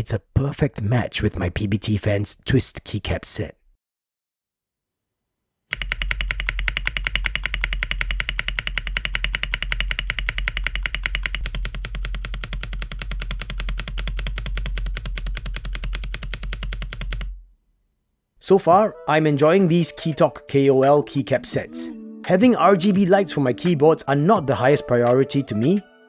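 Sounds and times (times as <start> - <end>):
fast mechanical keyboard typing: 5.7 - 17.4.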